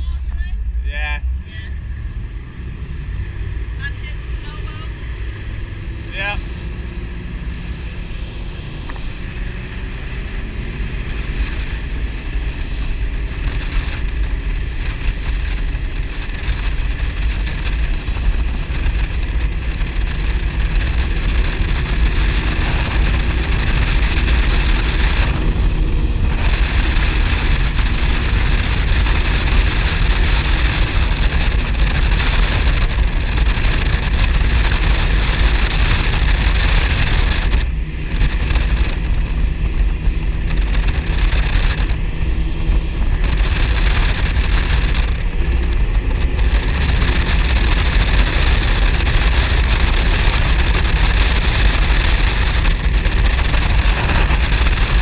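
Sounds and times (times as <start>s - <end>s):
powerboat engines running: 0.0s - 55.0s
water noise: 0.0s - 55.0s
wind on microphone: 0.0s - 55.0s.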